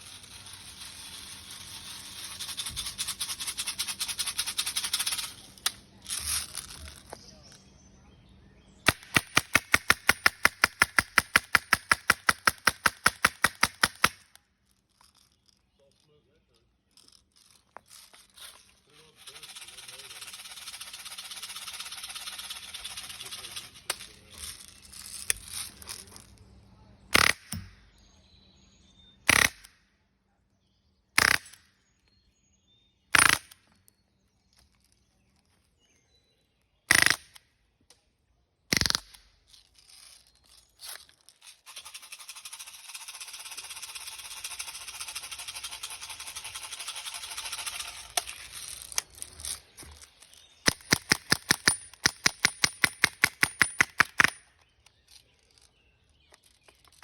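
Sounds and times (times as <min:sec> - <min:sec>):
air gun shots: 0:08.8 - 0:14.2, 0:27.1 - 0:27.8, 0:29.3 - 0:29.7, 0:31.2 - 0:31.6, 0:33.1 - 0:33.6, 0:36.9 - 0:37.4.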